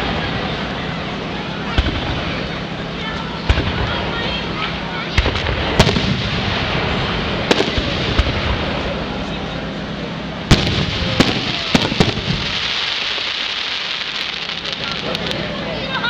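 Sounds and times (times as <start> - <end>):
noisy background: 0.0 - 16.0
fireworks bangs: 1.6 - 9.3, 10.5 - 15.6.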